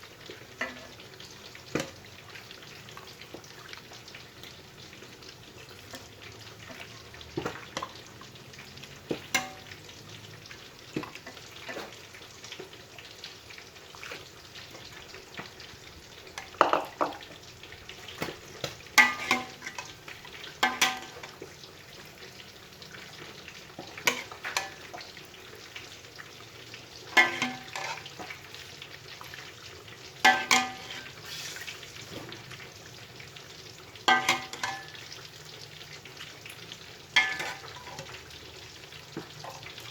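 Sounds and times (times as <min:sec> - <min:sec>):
food sizzling in a pan: 0:00.0 - 0:39.9
metal spatula knocking on pan: 0:16.5 - 0:17.3, 0:20.6 - 0:21.2, 0:34.1 - 0:34.8.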